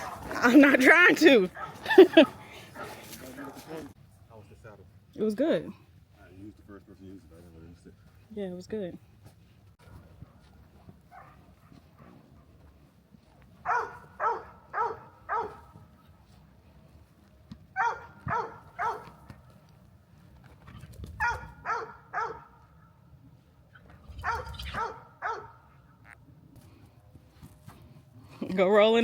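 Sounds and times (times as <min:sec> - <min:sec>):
dog barking: 0:00.0 - 0:00.3, 0:01.6 - 0:03.9, 0:11.1 - 0:12.2, 0:13.6 - 0:15.8, 0:17.8 - 0:19.2, 0:21.2 - 0:22.6, 0:24.2 - 0:25.8.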